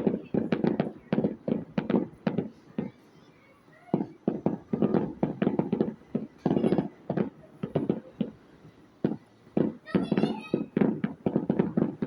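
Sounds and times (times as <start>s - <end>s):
fireworks banging and cracking: 0.0s - 2.9s, 3.9s - 12.0s.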